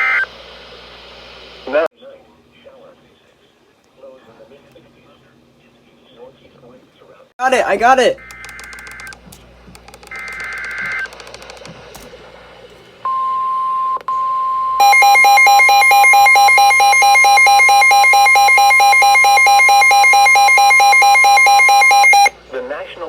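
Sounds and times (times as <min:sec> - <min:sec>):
rapidly pulsing electronic beep: 0:08.2 - 0:09.2, 0:10.0 - 0:11.4, 0:14.7 - 0:22.3
steady warning alarm tone: 0:10.0 - 0:11.8, 0:13.1 - 0:22.4.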